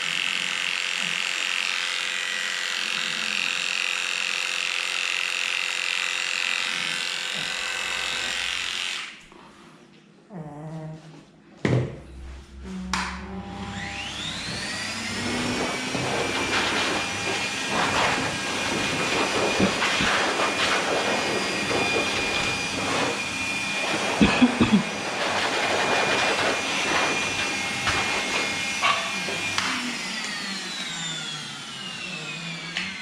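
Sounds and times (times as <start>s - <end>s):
electric blower motor whine: 12.1s - 33.0s.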